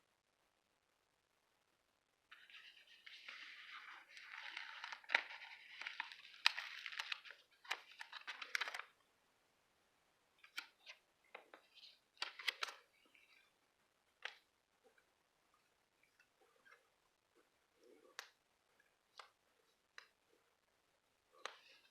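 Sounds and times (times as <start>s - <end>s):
paper rustling and crinkling: 2.3s - 8.9s, 11.6s - 12.9s.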